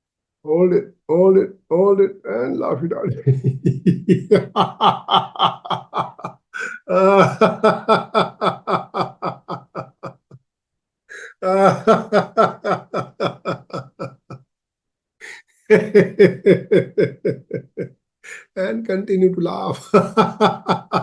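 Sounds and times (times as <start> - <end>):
hearty rhythmic laughter: 3.0 - 10.4, 11.1 - 14.4, 15.2 - 18.6, 19.8 - 21.0.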